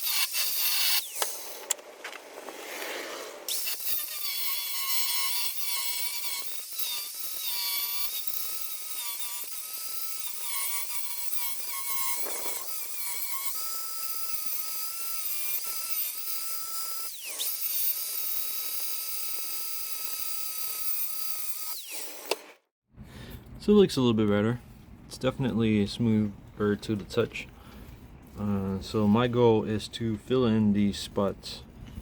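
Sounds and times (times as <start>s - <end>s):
grinder grinding steel: 0.0s - 1.8s, 2.7s - 22.5s.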